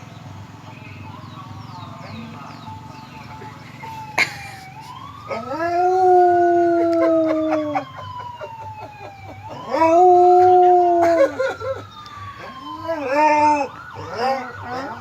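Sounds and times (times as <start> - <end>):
wailing siren: 0.9 - 15.0
dog howling: 5.3 - 7.9, 12.4 - 15.0.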